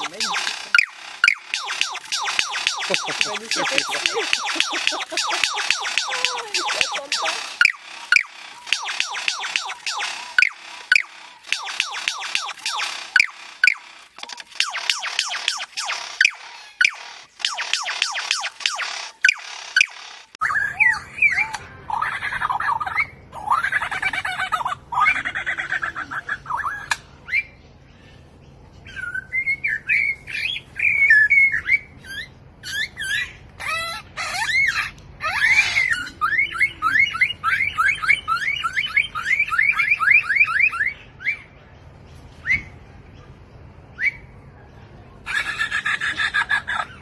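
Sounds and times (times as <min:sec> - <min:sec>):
bird squawking and whistling: 0:00.0 - 0:13.8, 0:14.6 - 0:21.6, 0:28.8 - 0:41.5
bird chirping notes: 0:00.0 - 0:13.9.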